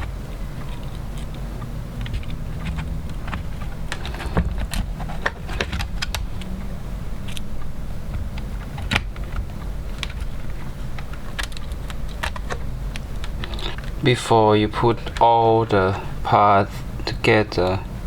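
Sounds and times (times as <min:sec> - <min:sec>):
hands handling small parts and tape: 0:00.0 - 0:06.6, 0:07.2 - 0:14.1
steady low hum: 0:00.0 - 0:18.0.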